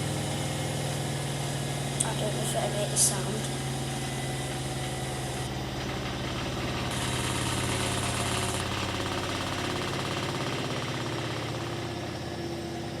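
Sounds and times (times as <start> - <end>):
washing machine humming and pulsing: 0.0 - 13.0.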